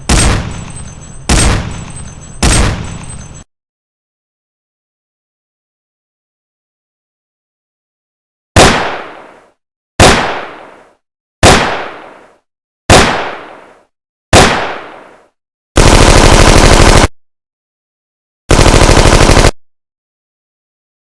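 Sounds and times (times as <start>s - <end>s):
single gunshots: 0.0s - 0.7s, 1.3s - 3.1s, 8.6s - 15.3s
automatic gunfire bursts: 15.8s - 17.1s, 18.5s - 19.6s.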